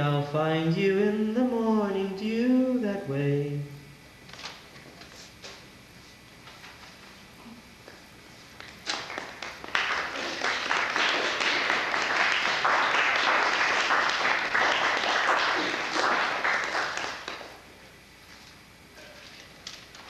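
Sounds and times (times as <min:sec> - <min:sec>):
audience applauding: 0:08.9 - 0:17.6.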